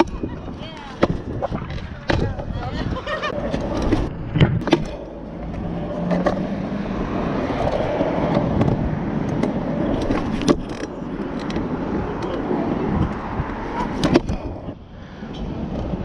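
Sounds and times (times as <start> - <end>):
scooter wheels rolling on concrete: 0.0 - 16.0
scooter deck clacking on ground: 3.3 - 6.6.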